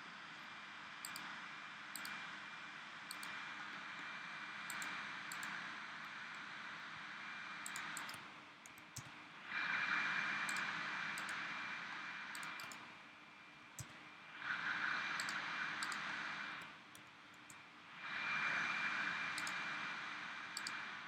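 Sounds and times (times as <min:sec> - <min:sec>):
computer mouse clicking: 0:01.0 - 0:01.3, 0:01.9 - 0:02.3, 0:03.1 - 0:03.4, 0:04.0 - 0:05.7, 0:07.6 - 0:09.2, 0:10.4 - 0:11.5, 0:12.3 - 0:13.0, 0:13.8 - 0:14.0, 0:15.1 - 0:17.6, 0:19.3 - 0:19.7, 0:20.6 - 0:20.9
steady hiss: 0:01.2 - 0:08.3, 0:09.0 - 0:16.8, 0:17.4 - 0:21.0.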